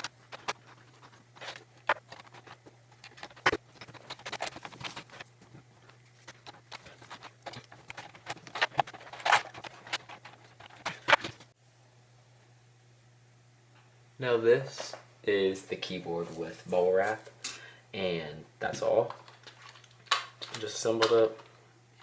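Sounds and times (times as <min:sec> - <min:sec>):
low electrical hum: 0:00.0 - 0:22.0
plastic keyboard parts clicking: 0:06.4 - 0:11.4.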